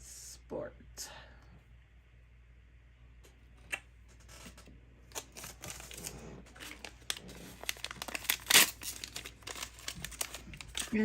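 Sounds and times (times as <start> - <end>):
plastic bag crinkling: 4.2 - 11.0.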